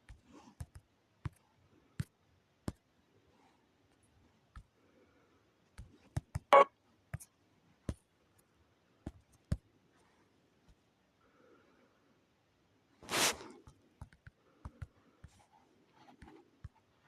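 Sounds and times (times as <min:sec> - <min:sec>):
sharp clicks and taps: 0:13.7 - 0:15.0.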